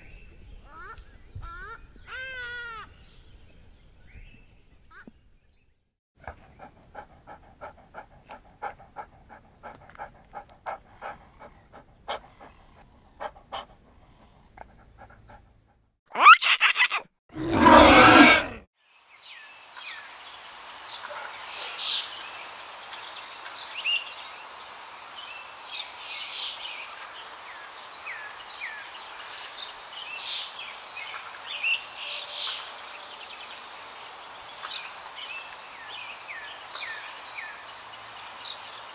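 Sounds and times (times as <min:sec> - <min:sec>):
birds chirping: 0:00.0 - 0:15.5
short pitched animal calls: 0:16.1 - 0:18.6.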